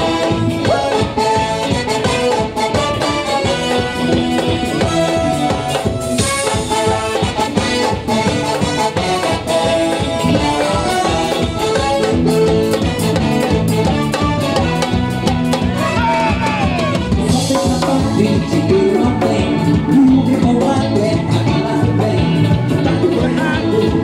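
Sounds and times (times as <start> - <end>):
band playing latin music: 0.0 - 24.0
drum kit beat: 0.0 - 24.0.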